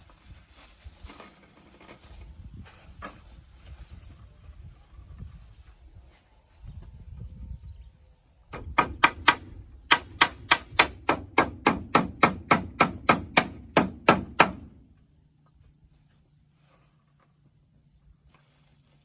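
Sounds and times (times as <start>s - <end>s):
rapid sharp knocks: 8.6s - 14.7s.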